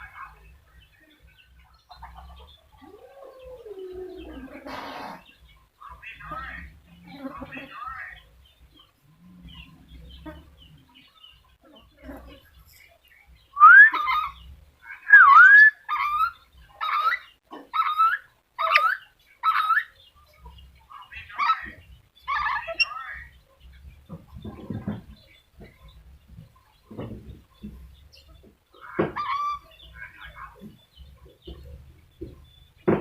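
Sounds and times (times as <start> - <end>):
parrot harsh calls: 13.6 - 14.4, 15.0 - 19.9, 22.3 - 23.2, 28.8 - 29.7.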